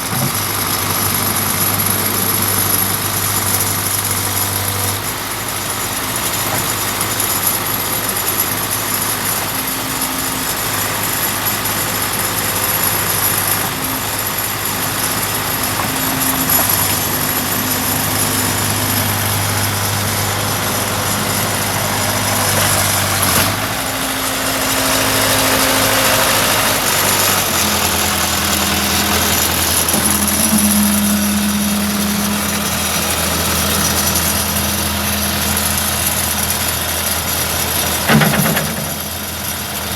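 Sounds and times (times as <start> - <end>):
backhoe engine running: 0.0 - 39.9.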